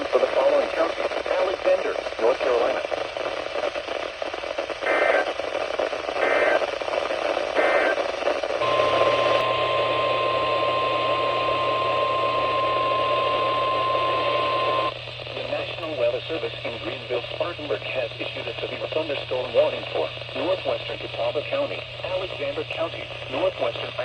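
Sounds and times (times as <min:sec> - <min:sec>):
radio hiss: 0:00.0 - 0:24.0
steady warning alarm tone: 0:08.6 - 0:14.9.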